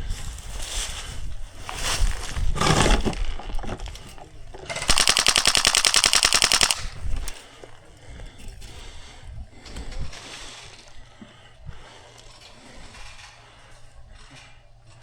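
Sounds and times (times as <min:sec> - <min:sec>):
rustling noises: 0:00.0 - 0:15.0
airsoft gun full-auto burst: 0:04.7 - 0:07.4.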